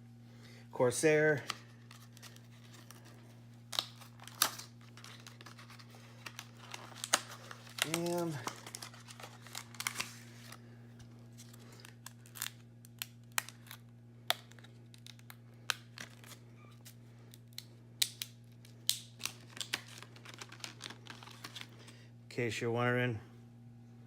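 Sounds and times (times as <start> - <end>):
steady low hum: 0.0 - 24.0
plastic packaging clicks and crackles: 1.4 - 10.6, 11.4 - 22.0.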